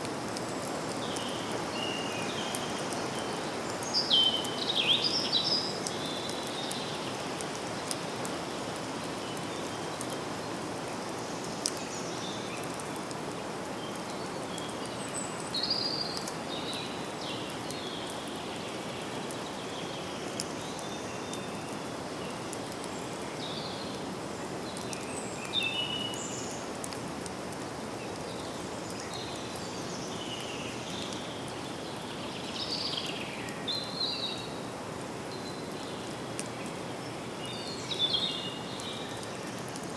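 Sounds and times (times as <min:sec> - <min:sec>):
steady background hiss: 0:00.0 - 0:39.9
birds singing and calling: 0:01.0 - 0:07.2, 0:13.8 - 0:24.0, 0:24.6 - 0:26.6, 0:28.0 - 0:34.6, 0:35.3 - 0:39.9.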